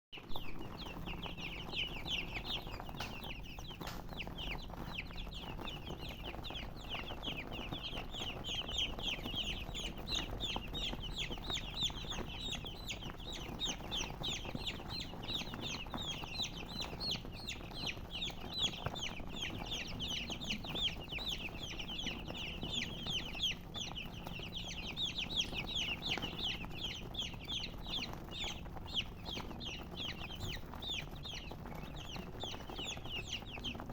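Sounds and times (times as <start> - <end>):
baby chicks chirping: 0.2 - 33.9.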